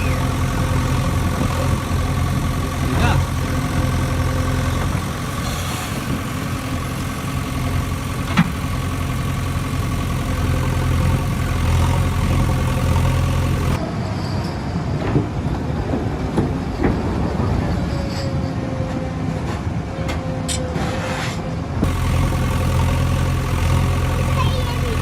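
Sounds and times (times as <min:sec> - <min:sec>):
diesel engine running: 0:00.0 - 0:13.8, 0:21.8 - 0:25.0
different engine running: 0:00.0 - 0:13.8, 0:21.8 - 0:25.0.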